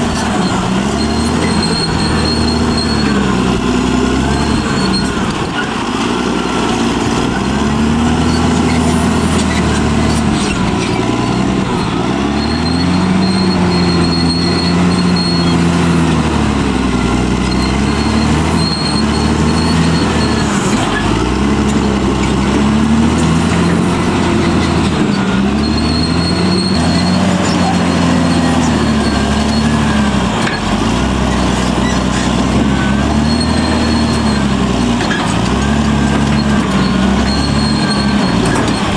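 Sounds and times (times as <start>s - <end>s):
bulldozer diesel engine under load: 0.0s - 38.9s
thin high squeal: 7.3s - 16.0s, 36.3s - 38.9s.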